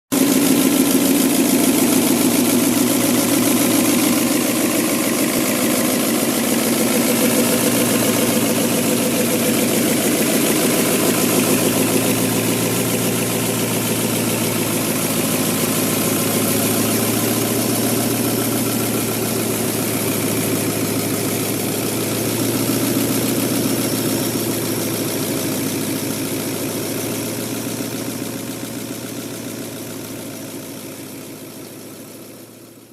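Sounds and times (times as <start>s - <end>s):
diesel engine running: 0.1s - 32.7s.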